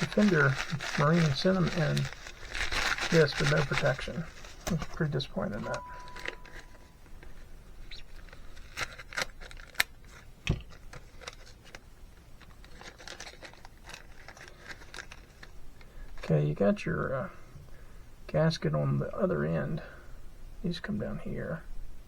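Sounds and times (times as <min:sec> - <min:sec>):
light clicks and crinkling: 0:00.0 - 0:16.4.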